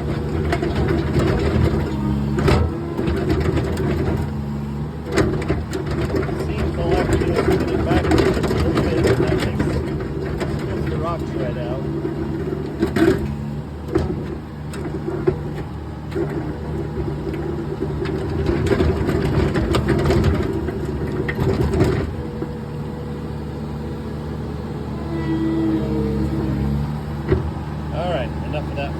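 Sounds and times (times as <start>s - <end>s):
skid steer engine running: 0.0s - 28.9s.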